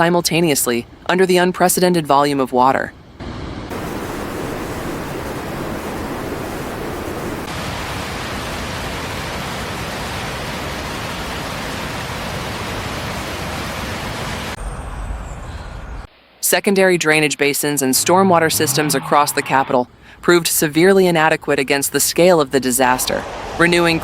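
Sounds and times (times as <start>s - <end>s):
rushing water: 3.7s - 14.6s.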